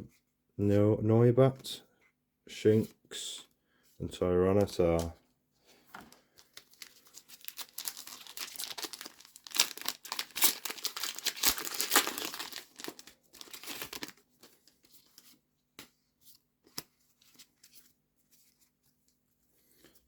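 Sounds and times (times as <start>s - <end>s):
foil wrapper crinkling and tearing: 6.4s - 15.2s.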